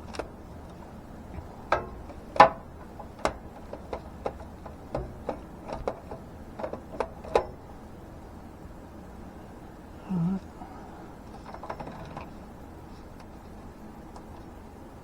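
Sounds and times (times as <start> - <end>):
hard objects clicking and knocking: 1.4 - 7.6.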